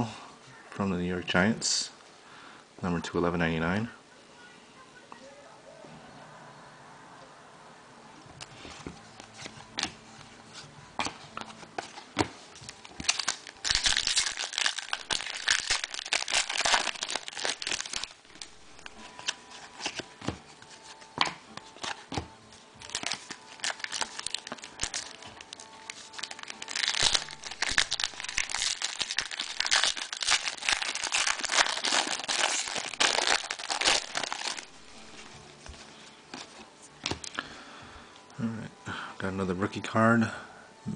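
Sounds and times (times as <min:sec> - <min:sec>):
foil packs crinkling: 0:12.7 - 0:20.0, 0:22.8 - 0:35.3.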